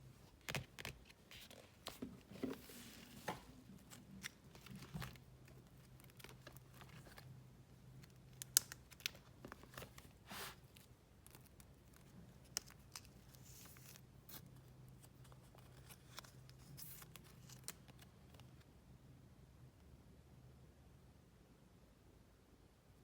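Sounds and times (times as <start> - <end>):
faint low hum: 0.0 - 23.0
packaging crinkling and rustling: 0.4 - 14.5.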